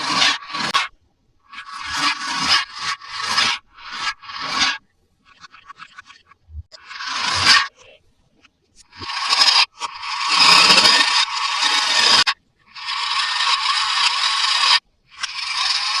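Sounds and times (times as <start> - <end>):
packaging being scraped: 1.6 - 4.8, 8.9 - 16.0.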